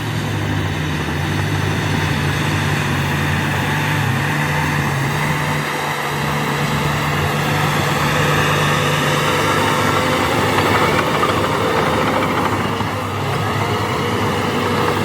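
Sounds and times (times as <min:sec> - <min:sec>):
bulldozer diesel engine running: 0:00.0 - 0:15.0.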